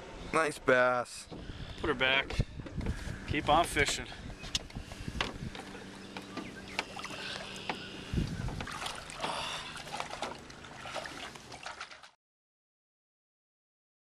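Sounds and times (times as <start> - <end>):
low steady hum: 0.0 - 12.1
water splashing around boat: 1.2 - 12.2.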